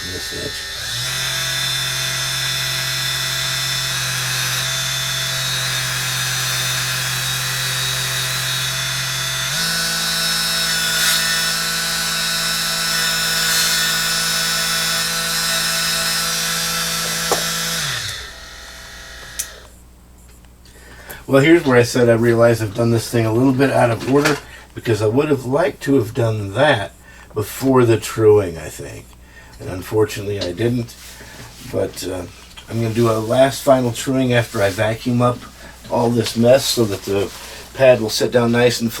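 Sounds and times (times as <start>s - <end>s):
gritty sanding hiss: 0.0s - 1.4s, 31.0s - 39.0s
small electric motor humming: 0.0s - 19.8s.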